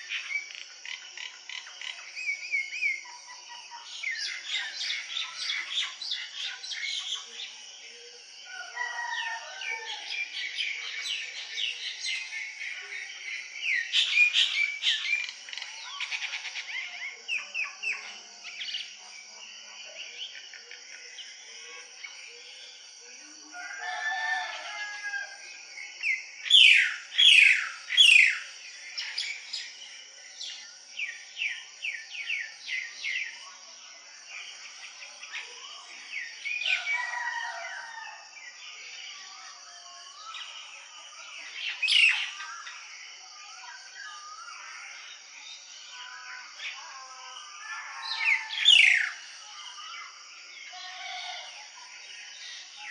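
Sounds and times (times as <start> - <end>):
small birds chirping: 0.0 - 9.1, 9.9 - 24.8, 25.7 - 37.6, 38.2 - 52.9
rooster crowing: 8.5 - 10.3, 23.5 - 25.5, 36.6 - 38.3.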